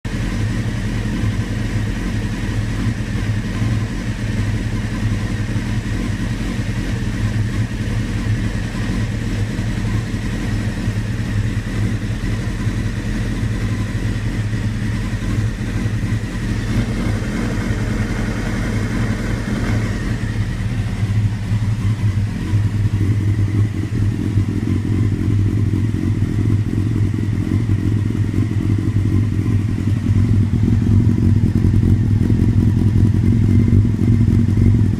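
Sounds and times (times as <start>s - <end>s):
engine idling rough: 0.0s - 34.9s.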